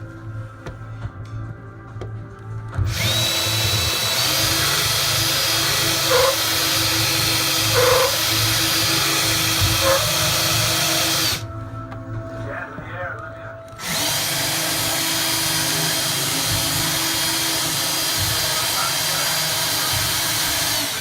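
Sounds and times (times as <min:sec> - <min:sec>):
power drill drilling: 0:02.8 - 0:11.4, 0:13.8 - 0:21.0.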